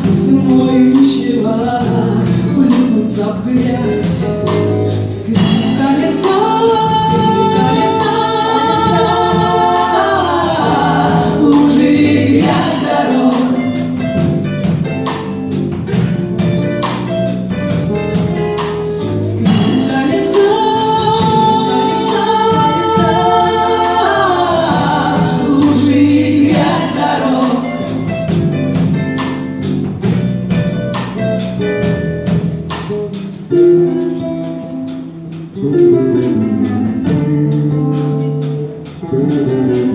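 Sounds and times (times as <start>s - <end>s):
women singing in harmony: 0.0s - 14.2s, 19.2s - 28.4s
live pop band playing: 0.0s - 39.9s.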